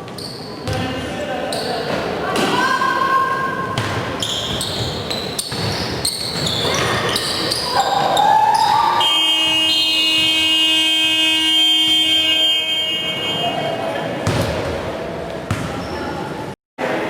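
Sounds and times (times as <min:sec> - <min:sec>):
basketball bouncing: 0:03.7 - 0:07.3, 0:09.5 - 0:10.5, 0:14.2 - 0:14.8, 0:15.5 - 0:15.8
scoreboard buzzer horn: 0:09.0 - 0:13.6.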